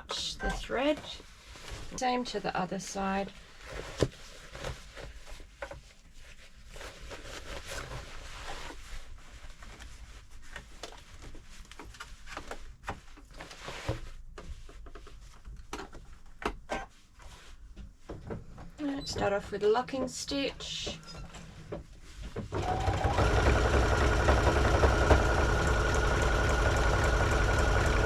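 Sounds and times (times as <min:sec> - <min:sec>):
fabric rustling: 0:03.0 - 0:16.3.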